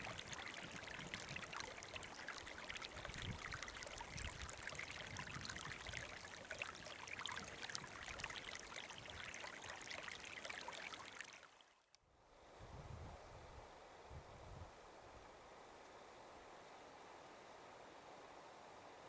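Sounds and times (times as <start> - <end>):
stream babbling over stones: 0.0 - 11.6
faint outdoor hiss: 0.0 - 19.0.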